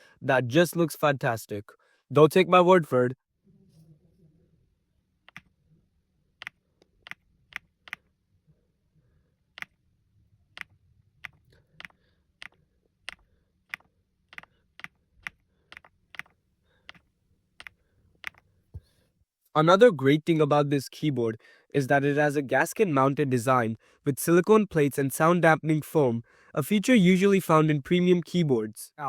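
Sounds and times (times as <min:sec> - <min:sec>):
mechanical keyboard keystrokes: 0:10.6 - 0:17.0.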